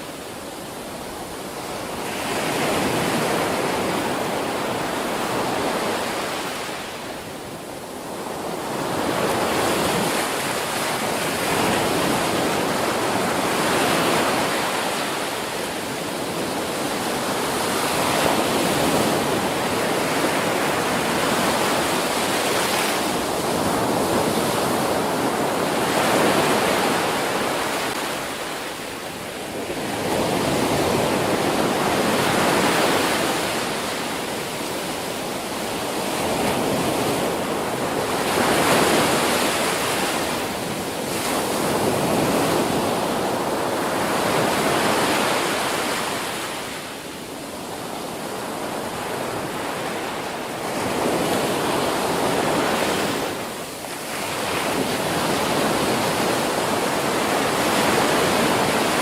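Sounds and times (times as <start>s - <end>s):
ocean surf breaking: 0.0s - 59.0s.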